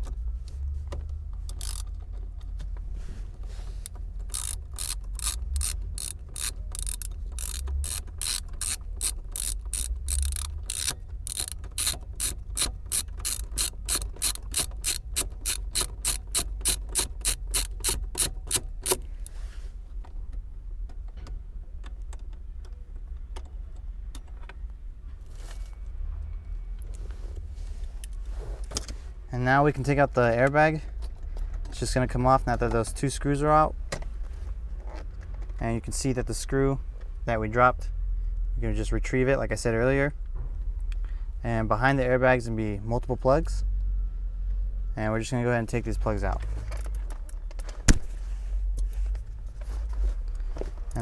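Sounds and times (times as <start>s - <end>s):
socket ratchet clicking: 1.5s - 2.0s, 3.8s - 19.4s.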